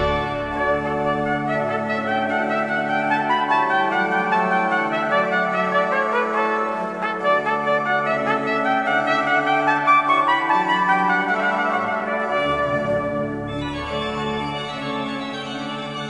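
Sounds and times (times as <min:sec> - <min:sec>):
sustained chords: 0:00.0 - 0:04.8
trumpet-like melody: 0:00.0 - 0:16.0.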